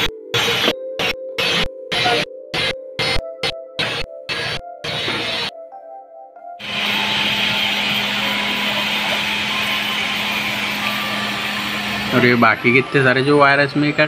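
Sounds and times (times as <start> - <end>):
background music: 0.0 - 13.7
steady whirring with low hum: 6.6 - 14.0.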